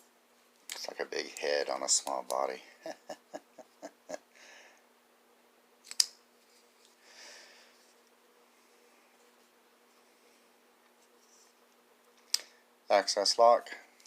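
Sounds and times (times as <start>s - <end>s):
soft breath-like rush: 6.9s - 9.2s.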